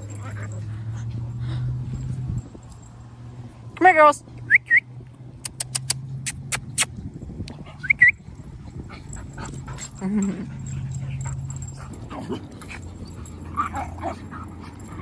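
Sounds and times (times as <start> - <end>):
dogs whimpering and yipping: 0.0 - 3.0, 7.5 - 15.0.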